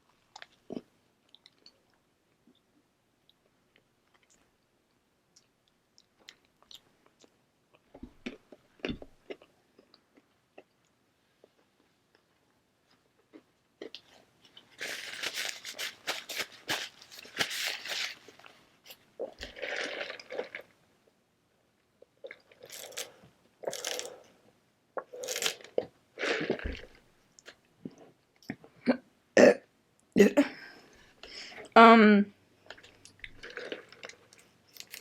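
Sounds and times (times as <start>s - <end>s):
crunchy chewing: 22.5s - 24.3s, 32.7s - 35.0s.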